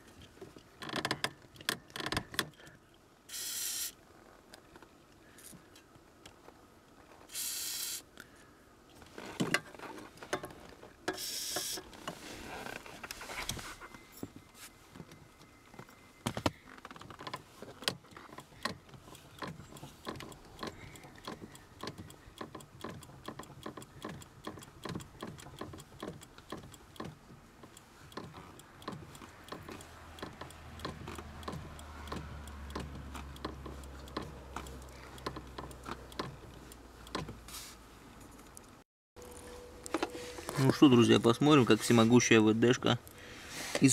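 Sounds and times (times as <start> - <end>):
small clicks and knocks: 0.1 - 2.8, 12.8 - 37.5
aerosol spray hisses: 3.3 - 3.9, 7.3 - 8.0
low steady hum: 39.2 - 43.9.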